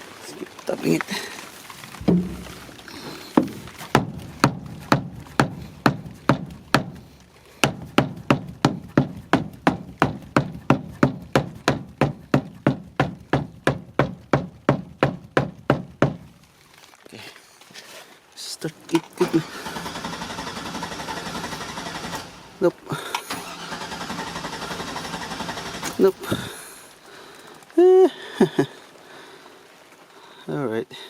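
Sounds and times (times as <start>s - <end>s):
rubber mallet tapping metal tank: 2.0s - 16.3s.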